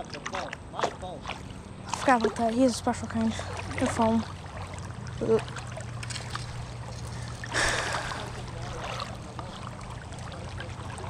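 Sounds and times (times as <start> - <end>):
water swishing from wading: 0.0 - 11.0
water splash: 3.2 - 11.0.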